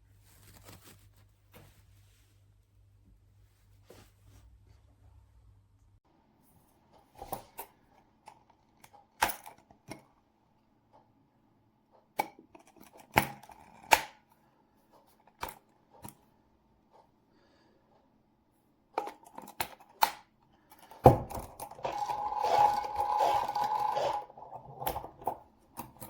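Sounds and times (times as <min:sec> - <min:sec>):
coffee grinder parts clicking: 0:19.0 - 0:26.0.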